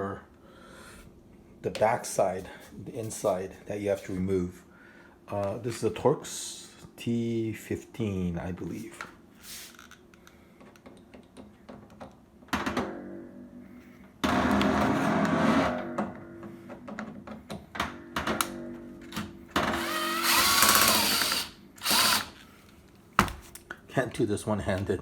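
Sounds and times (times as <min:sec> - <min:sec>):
bit and screws clicking: 0:19.6 - 0:22.4
cordless drill motor: 0:19.6 - 0:22.5.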